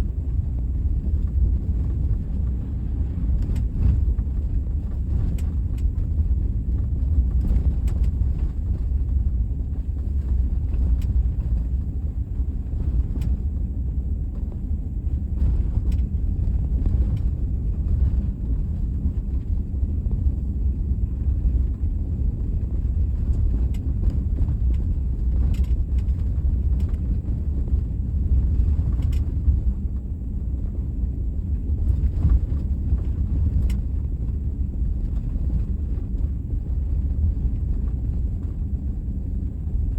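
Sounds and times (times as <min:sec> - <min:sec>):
car low rumble: 0:00.0 - 0:39.9.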